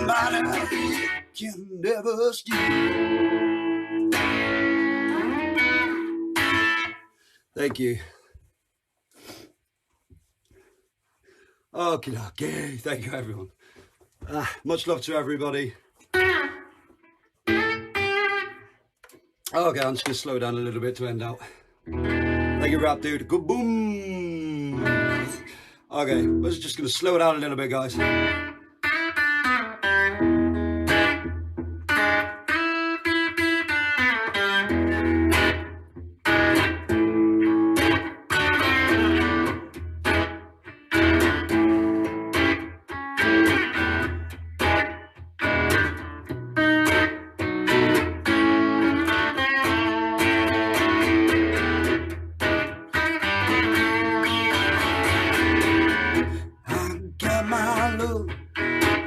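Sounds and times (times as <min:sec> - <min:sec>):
guitar playing picked notes and chords: 0:00.0 - 0:01.4, 0:02.5 - 0:07.2, 0:16.0 - 0:18.8, 0:21.8 - 0:26.6, 0:28.0 - 0:59.0.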